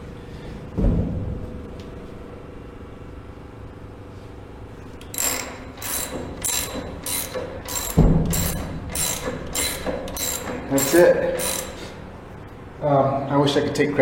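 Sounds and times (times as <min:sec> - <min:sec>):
low steady hum: 0:00.0 - 0:14.0
heavy thump: 0:00.7 - 0:01.6
hand ratchet clicking: 0:05.0 - 0:12.0.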